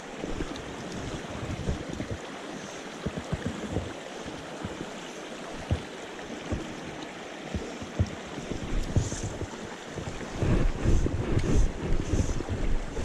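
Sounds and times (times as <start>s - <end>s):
mountain stream water rushing: 0.0s - 13.0s
low thumps on microphone: 7.5s - 13.0s.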